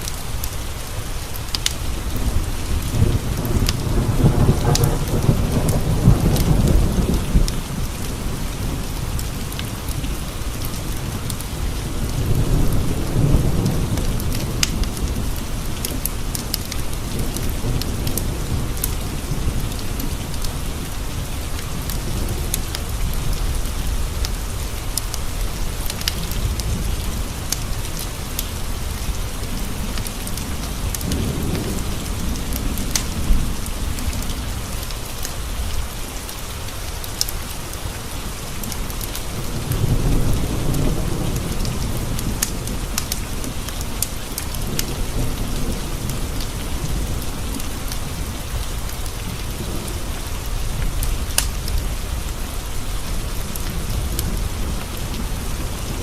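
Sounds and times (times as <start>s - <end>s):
wood fire crackling: 0.0s - 2.7s, 13.6s - 20.9s, 21.5s - 39.9s, 40.6s - 55.8s
rain pattering on window glass: 0.0s - 56.0s
thunder rumbling: 0.1s - 36.0s, 37.9s - 56.0s.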